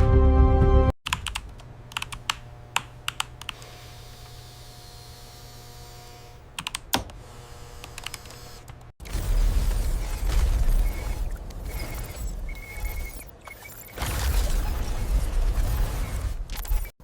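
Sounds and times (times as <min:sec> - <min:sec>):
music: 0:00.0 - 0:01.0.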